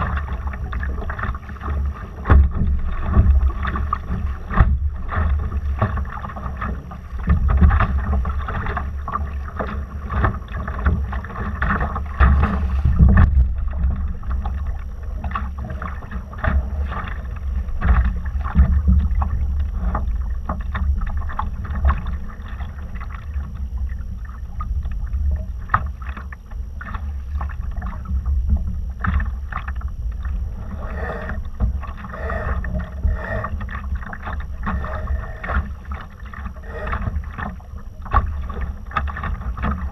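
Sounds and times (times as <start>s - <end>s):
water splashing against hull: 0.0s - 39.9s
wind on microphone: 10.3s - 15.9s.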